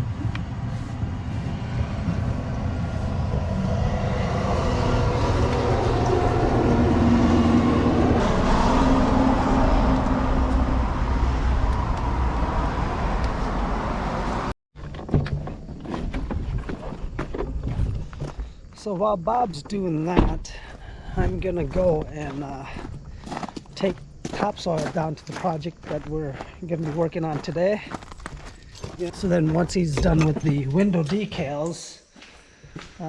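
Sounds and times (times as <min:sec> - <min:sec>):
vehicle passing by: 0:00.0 - 0:14.5.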